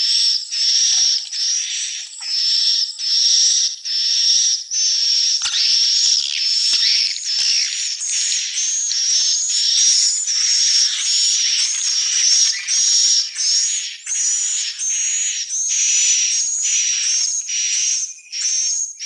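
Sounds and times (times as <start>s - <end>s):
swiftlets twittering chirps: 5.3s - 19.0s.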